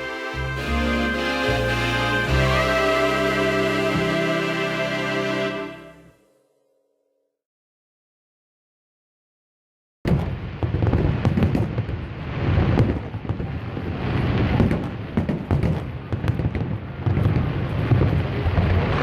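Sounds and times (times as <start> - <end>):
firework crackles and pops: 10.1 - 19.0.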